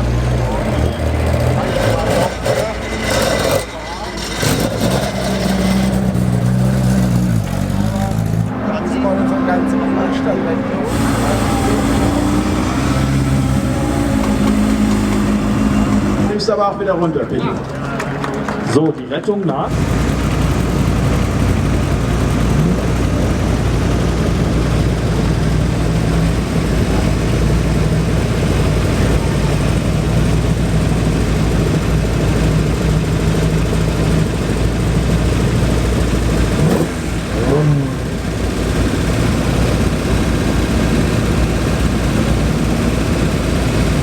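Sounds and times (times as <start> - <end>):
engine revving: 0.0 - 18.9, 19.7 - 44.0
car engine running: 0.0 - 19.0, 19.6 - 44.0.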